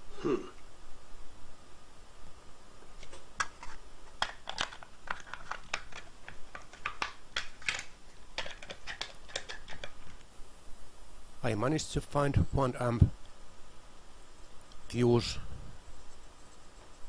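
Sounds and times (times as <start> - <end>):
small parts and packaging handled: 3.0 - 10.2.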